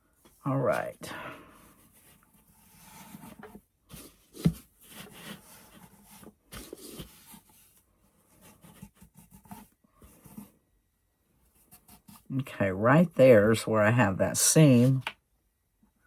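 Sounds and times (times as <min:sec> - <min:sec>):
paper rubbing and scraping: 0:01.8 - 0:10.5, 0:14.6 - 0:15.1.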